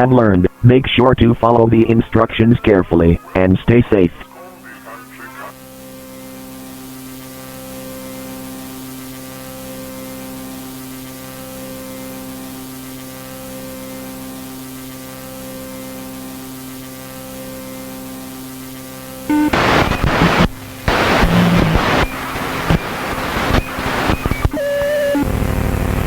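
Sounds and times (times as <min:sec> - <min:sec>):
electrical hum: 0:00.0 - 0:26.0
static hiss: 0:00.0 - 0:26.0
low tone cutting out: 0:19.3 - 0:26.0.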